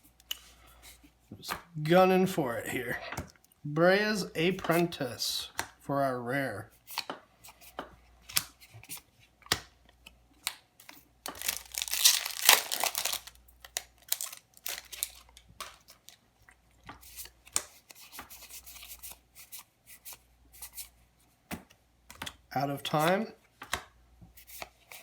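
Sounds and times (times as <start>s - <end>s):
cards clicking and snapping: 10.4s - 16.1s, 17.2s - 18.3s
plastic packaging tearing and crinkling: 11.2s - 16.2s.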